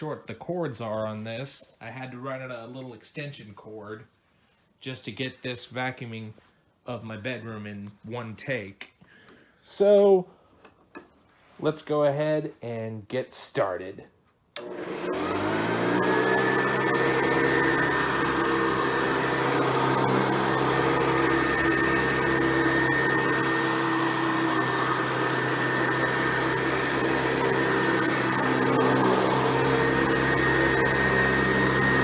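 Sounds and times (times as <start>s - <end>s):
vacuum cleaner switch click: 14.6s - 15.4s
vacuum cleaner motor whining: 14.6s - 32.0s.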